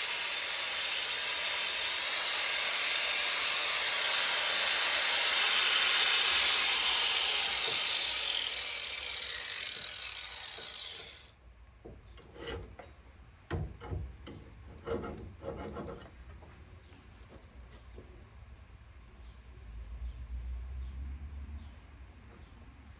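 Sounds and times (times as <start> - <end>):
power tool hissing rush: 0.0 - 11.3
knocks and scrapes: 13.6 - 18.2.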